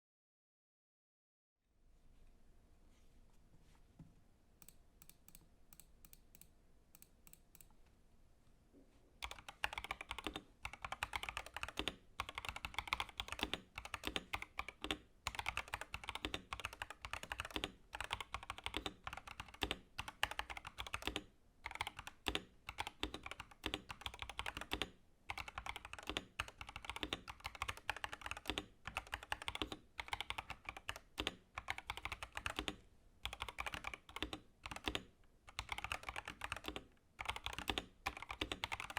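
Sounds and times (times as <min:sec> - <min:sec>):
mechanical keyboard typing: 0:09.2 - 0:38.9.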